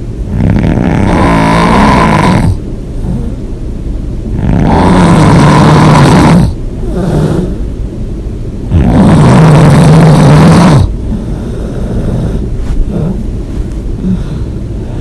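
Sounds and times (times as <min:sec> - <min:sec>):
person snoring loudly: 0:00.3 - 0:03.4, 0:04.3 - 0:07.6, 0:08.7 - 0:13.2
quiet breaths: 0:02.5 - 0:03.6, 0:10.8 - 0:15.0.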